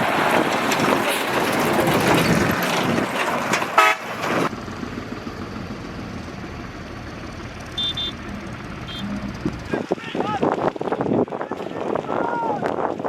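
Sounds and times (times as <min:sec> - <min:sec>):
vehicle horn beep: 0:03.8 - 0:04.1, 0:07.8 - 0:09.4.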